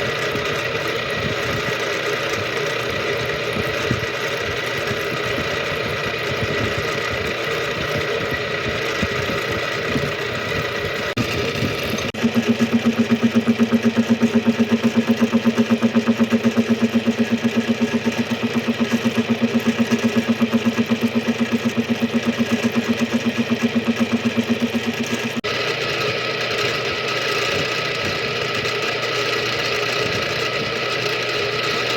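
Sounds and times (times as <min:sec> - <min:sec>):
machine tool cutting metal gear: 0:00.0 - 0:31.9
rhythmic cutter pulsing: 0:00.0 - 0:31.9.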